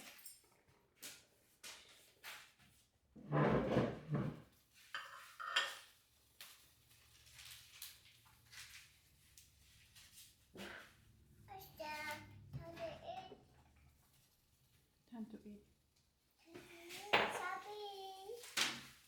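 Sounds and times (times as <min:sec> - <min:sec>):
dishes and cutlery clattering: 0:03.5 - 0:06.0, 0:17.1 - 0:17.6.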